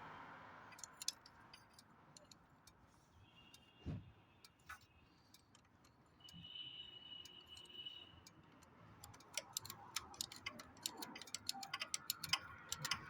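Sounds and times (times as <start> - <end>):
faint clicks: 7.2 - 13.0.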